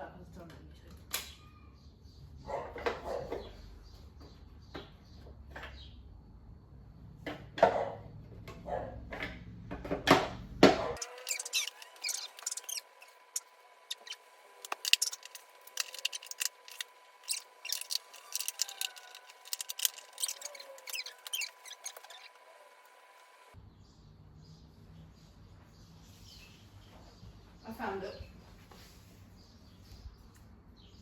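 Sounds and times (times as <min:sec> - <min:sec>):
vacuum cleaner parts clicking and rattling: 0:11.0 - 0:22.4.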